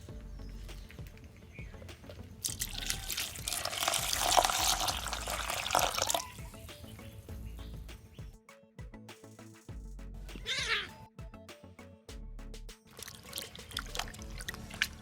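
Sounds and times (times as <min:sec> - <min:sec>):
water pouring and splashing: 0:02.4 - 0:06.5, 0:12.9 - 0:15.0.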